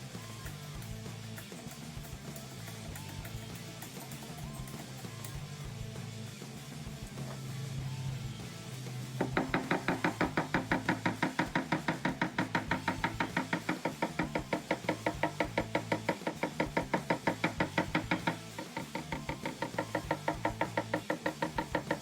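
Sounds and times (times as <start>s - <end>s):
background music: 0.0s - 22.0s
rapid light tapping: 9.2s - 22.0s.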